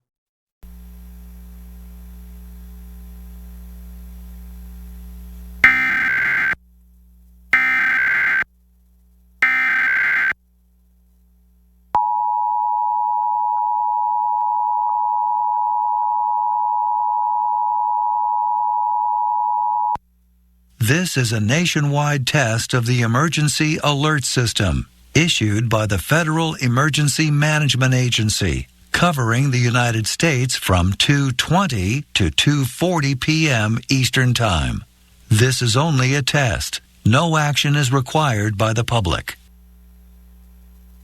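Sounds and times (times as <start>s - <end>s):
digital data tone bursts: 5.6s - 6.6s, 7.6s - 8.4s, 9.4s - 10.4s
two-tone attention signal: 5.6s - 6.6s.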